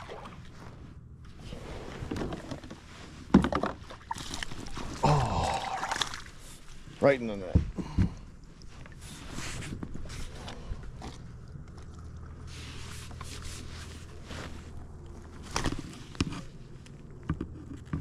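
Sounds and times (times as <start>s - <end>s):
handling knocks and scrapes on kayak: 1.8s - 5.0s.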